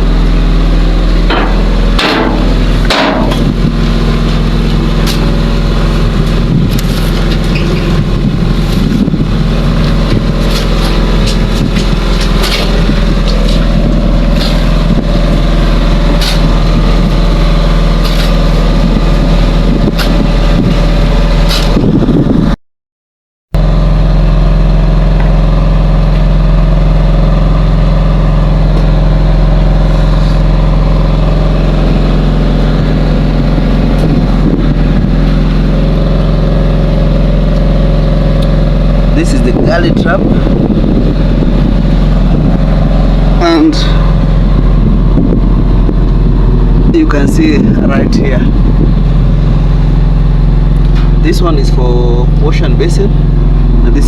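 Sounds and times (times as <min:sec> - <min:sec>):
engine humming: 0:00.0 - 0:22.6, 0:23.5 - 0:54.0
sharp knocks: 0:01.2 - 0:03.6.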